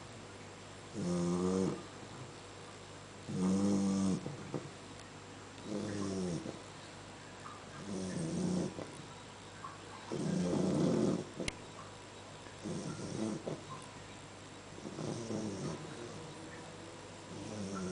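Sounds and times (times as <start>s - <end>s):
puppy snoring: 0.9s - 2.3s, 3.2s - 4.8s, 5.6s - 6.7s, 7.8s - 9.1s, 10.1s - 11.6s, 12.6s - 13.8s, 14.7s - 17.9s.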